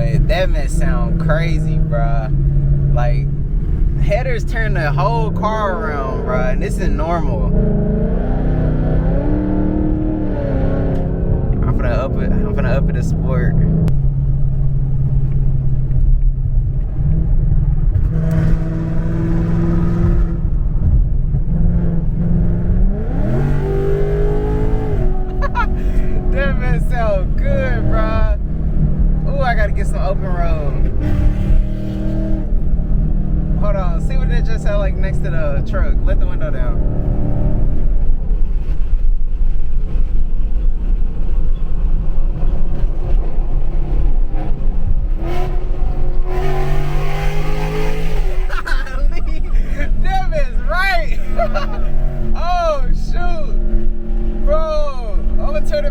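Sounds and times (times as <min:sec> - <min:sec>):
car engine exhaust drone and revving: 0:00.0 - 0:55.9.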